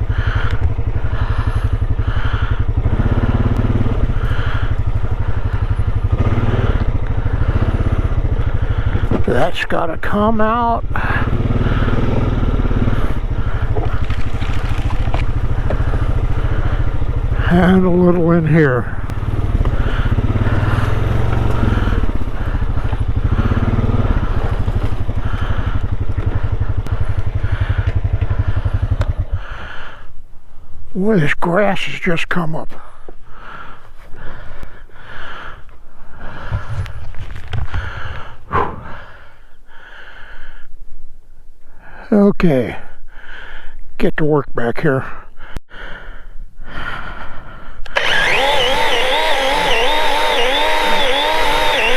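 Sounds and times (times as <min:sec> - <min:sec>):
man breathing heavily: 0:00.0 - 0:09.2, 0:10.9 - 0:17.7, 0:18.8 - 0:30.9, 0:32.7 - 0:41.0, 0:41.6 - 0:42.1, 0:42.8 - 0:43.9, 0:45.0 - 0:47.9
small engine idling: 0:00.0 - 0:30.8, 0:33.3 - 0:40.7, 0:46.8 - 0:51.9
low thumps: 0:36.2 - 0:39.3
man grunting: 0:38.5 - 0:39.1.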